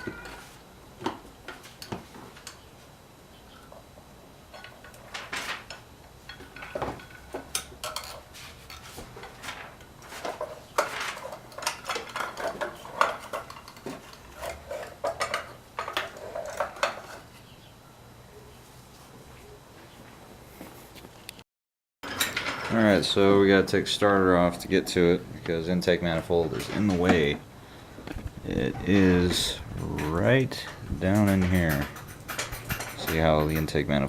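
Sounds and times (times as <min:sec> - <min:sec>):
metal tools clinking: 0:04.5 - 0:08.9, 0:10.3 - 0:17.3, 0:22.0 - 0:23.2, 0:28.6 - 0:34.0.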